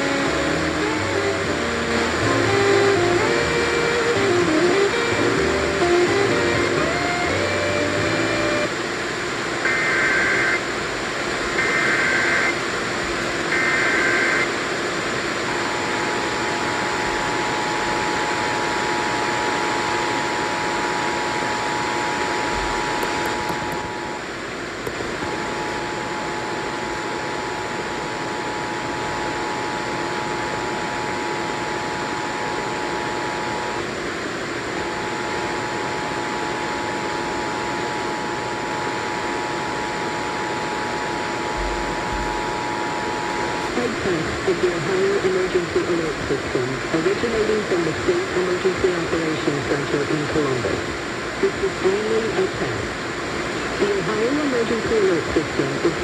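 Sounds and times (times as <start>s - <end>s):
radio hiss: 0.0s - 56.0s
two-tone alert signal: 41.6s - 43.8s.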